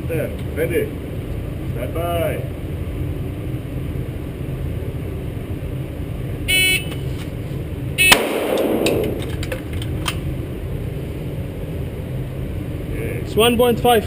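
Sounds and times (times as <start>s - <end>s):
pistol shot: 8.0s - 10.2s.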